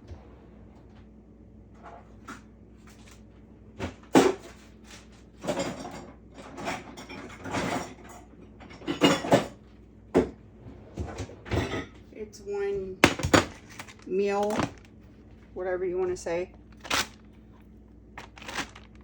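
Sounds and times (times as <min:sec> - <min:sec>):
scraping handling noise: 0:16.6 - 0:19.0.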